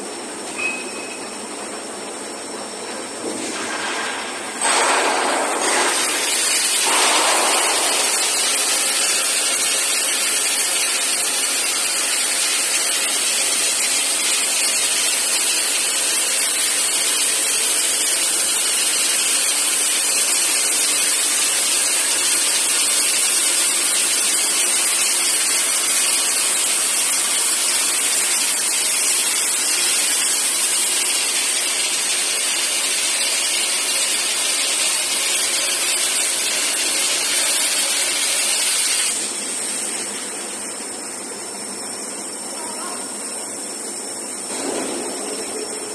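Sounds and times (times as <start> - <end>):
cutting torch hissing: 4.4 - 40.9.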